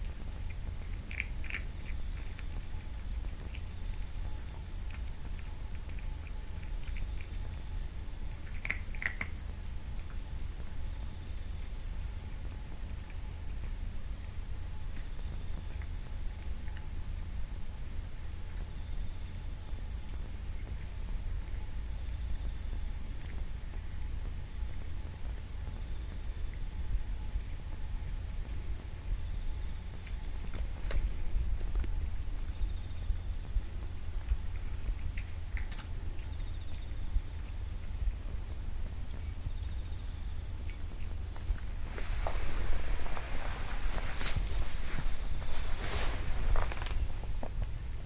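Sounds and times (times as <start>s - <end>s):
steady low hum: 0.0s - 48.0s
faint pattering: 27.6s - 47.9s.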